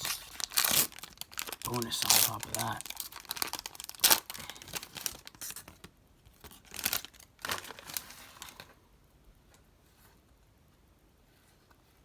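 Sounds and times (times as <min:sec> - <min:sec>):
card pack wrapper tearing: 0:00.0 - 0:08.2.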